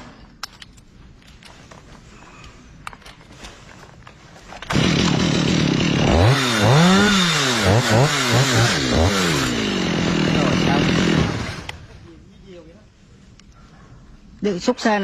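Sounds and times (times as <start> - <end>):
chainsaw revving: 4.7 - 11.9.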